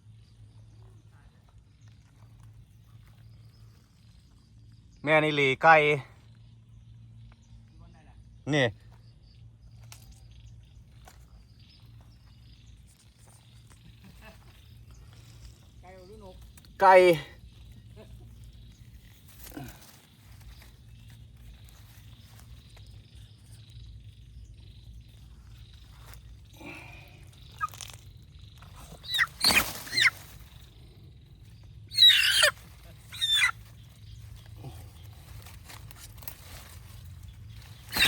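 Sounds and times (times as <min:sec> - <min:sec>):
chicken squawking: 0:28.8 - 0:30.2, 0:31.9 - 0:33.6.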